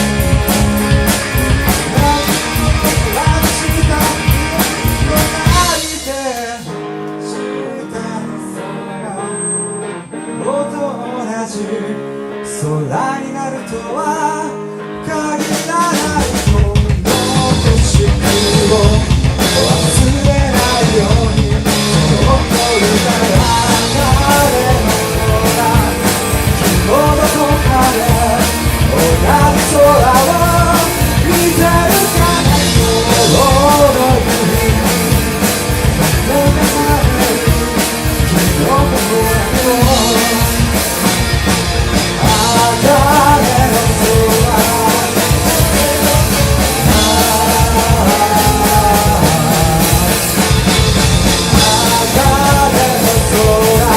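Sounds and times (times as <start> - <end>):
drum kit beat: 0.0 - 7.2, 15.4 - 53.9
rock band playing: 0.0 - 53.9.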